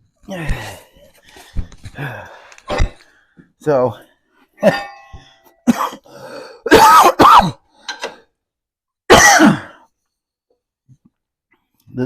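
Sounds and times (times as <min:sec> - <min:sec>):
man coughing and clearing throat: 0:04.6 - 0:07.6, 0:09.1 - 0:09.9.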